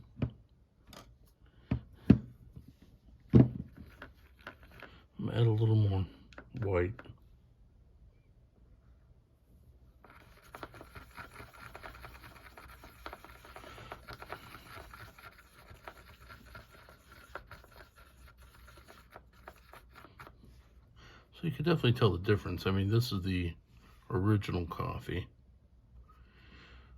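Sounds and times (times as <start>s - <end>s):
brush scraping mixing paint: 3.6s - 7.2s, 10.0s - 20.8s.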